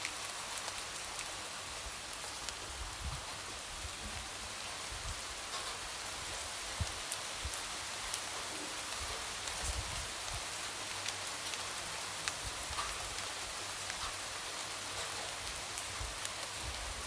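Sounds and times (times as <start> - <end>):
light rain hissing: 0.0 - 17.0.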